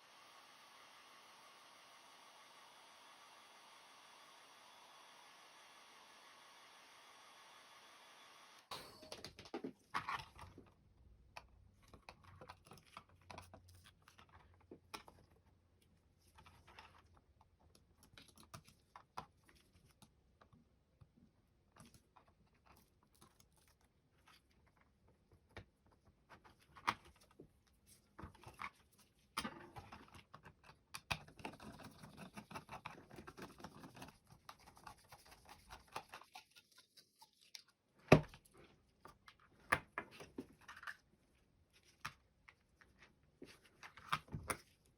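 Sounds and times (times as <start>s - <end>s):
plastic mouse clicks and scraping: 28.2s - 37.8s.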